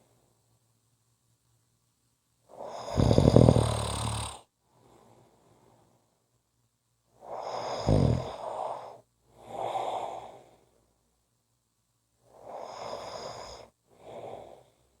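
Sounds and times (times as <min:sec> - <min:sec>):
person snoring: 0:02.6 - 0:04.5, 0:07.3 - 0:10.3.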